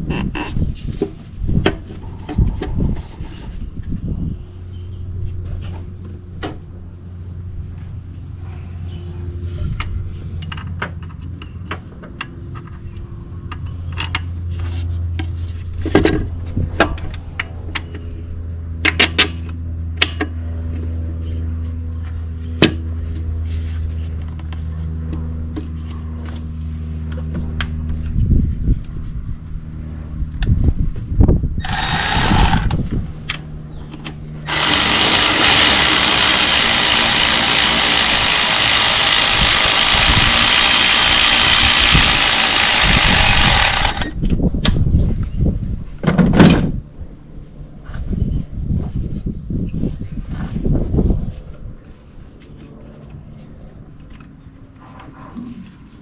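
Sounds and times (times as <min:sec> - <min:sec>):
metal tools clicking on engine: 0:31.6 - 0:32.8, 0:34.5 - 0:44.2.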